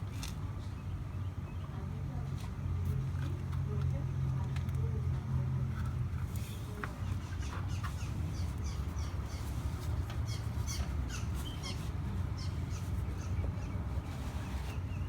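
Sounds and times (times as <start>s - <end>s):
birds chirping: 6.6s - 15.0s.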